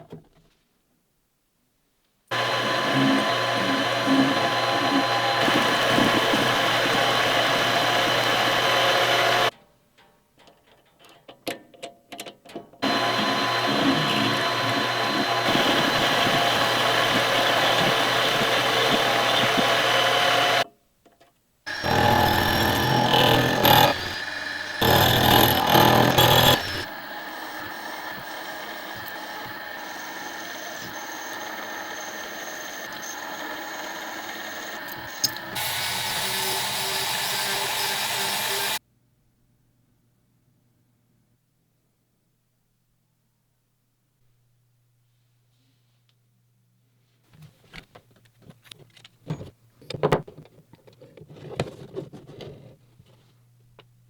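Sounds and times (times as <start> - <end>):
power tool motor whining: 2.3 - 9.5, 12.8 - 20.6, 21.7 - 38.8.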